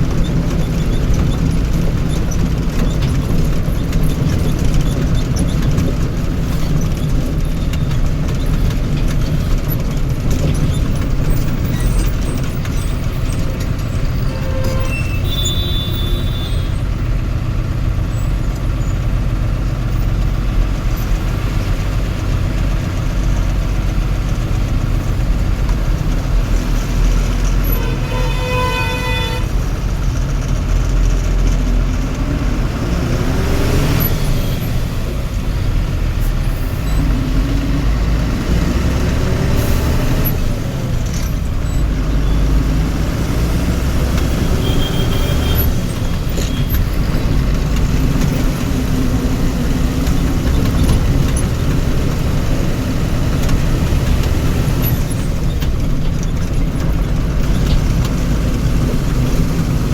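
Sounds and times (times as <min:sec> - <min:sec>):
heavy vehicle engine rumbling: 0:00.0 - 0:59.9
vehicle horn: 0:14.2 - 0:16.8, 0:27.6 - 0:29.6, 0:44.3 - 0:45.8.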